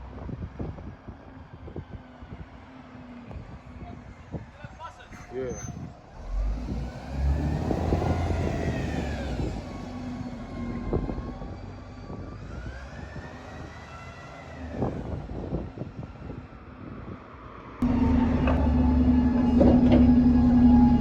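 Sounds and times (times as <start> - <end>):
bus engine droning: 6.1 - 16.9, 17.8 - 21.0.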